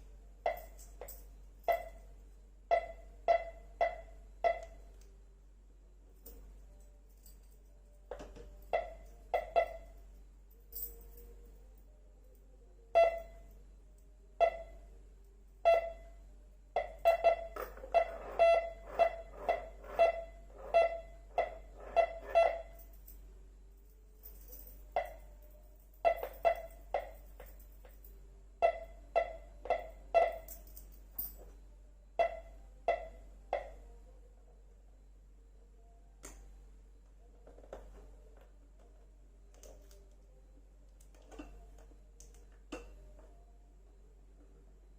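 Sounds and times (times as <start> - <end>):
metal detector beeps: 2.7 - 4.8, 8.7 - 10.0, 13.0 - 13.4, 14.4 - 14.8, 15.7 - 16.1, 16.8 - 22.9, 26.0 - 27.2, 28.6 - 30.6, 32.2 - 33.7.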